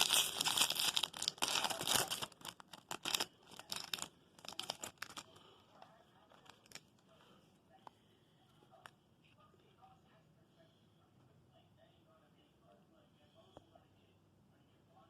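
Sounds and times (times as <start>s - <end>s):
foil wrapper crinkling: 0.0s - 5.4s, 6.3s - 7.0s.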